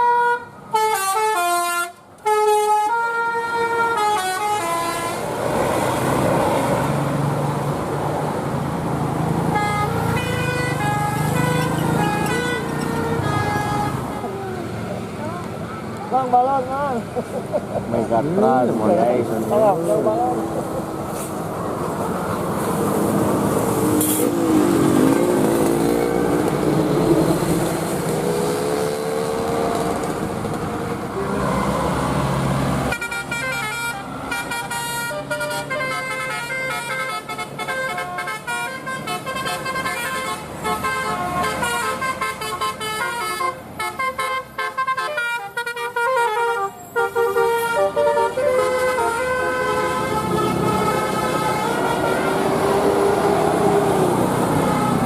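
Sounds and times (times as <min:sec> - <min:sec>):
vehicle rumble: 0:03.6 - 0:37.7, 0:45.6 - 0:55.0
musical air horn tune: 0:09.5 - 0:14.0, 0:37.9 - 0:52.5.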